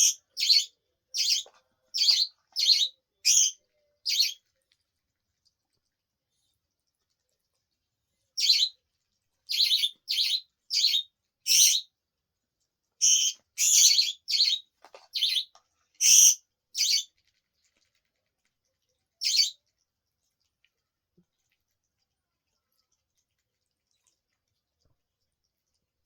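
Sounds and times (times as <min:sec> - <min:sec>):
parrot chirping: 0:00.0 - 0:04.4, 0:08.4 - 0:08.8, 0:09.5 - 0:11.9, 0:13.0 - 0:17.1, 0:19.2 - 0:19.6.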